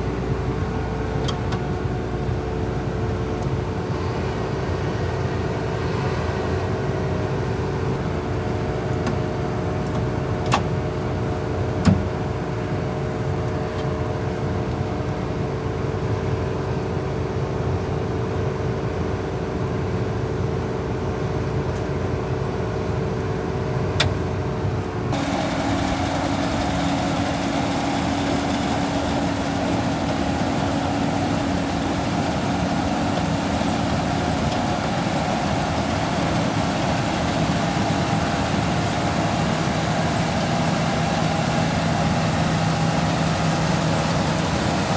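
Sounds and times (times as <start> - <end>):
lower engine drone with hiss: 24.6 - 44.9
vehicle engine running: 25.1 - 44.9.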